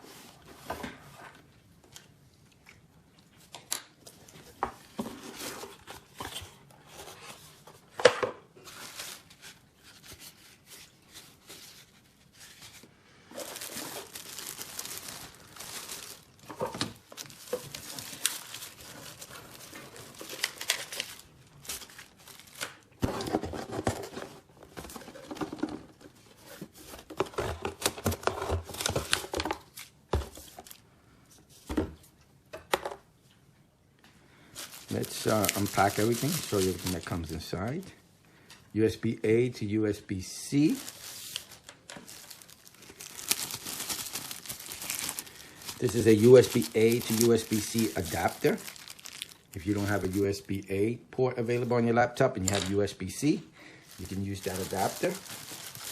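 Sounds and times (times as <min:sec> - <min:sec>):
packaging tearing and crinkling: 0:13.3 - 0:24.2, 0:34.6 - 0:37.4, 0:40.5 - 0:50.4, 0:53.9 - 0:55.9.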